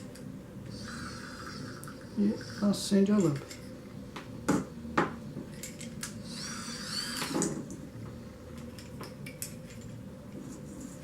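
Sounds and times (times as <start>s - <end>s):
high wavering squeak: 6.2s - 7.4s.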